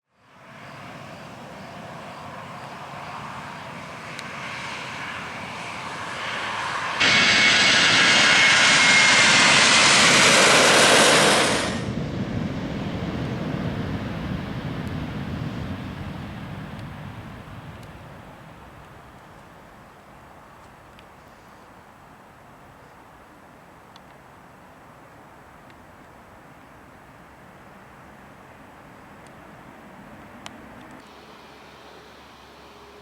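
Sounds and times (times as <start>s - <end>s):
faint high whine: 0.1s - 21.9s, 31.0s - 33.0s
jet engines roaring: 0.4s - 19.9s.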